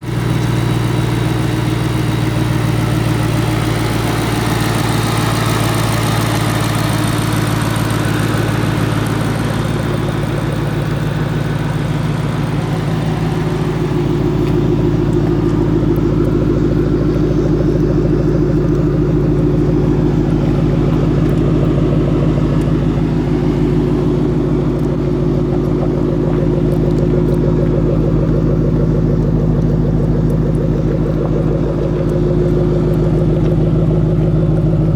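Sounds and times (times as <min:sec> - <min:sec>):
car engine idling: 0:00.0 - 0:34.9.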